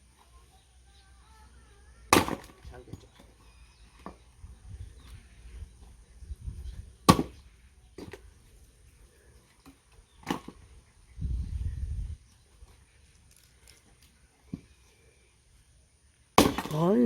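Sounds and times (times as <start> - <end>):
axe chopping wood: 2.1 - 3.1, 7.0 - 7.4, 10.2 - 10.6, 16.4 - 17.0.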